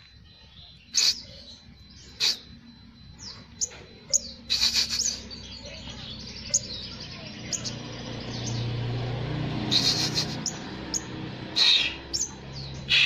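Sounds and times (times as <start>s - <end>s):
bird chirping: 0.0s - 13.0s.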